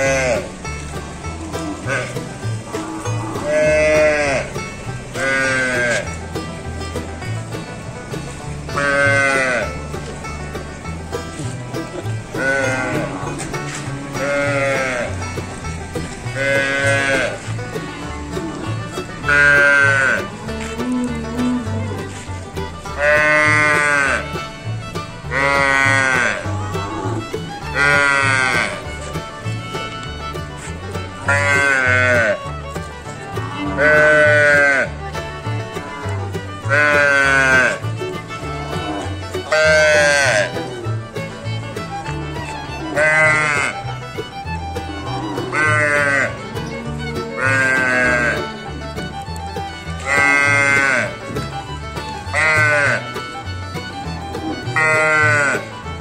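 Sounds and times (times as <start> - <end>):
background music with low beat: 0.0 - 56.0
calf bawling: 33.4 - 34.9, 41.6 - 49.2, 50.0 - 53.2, 53.9 - 55.8.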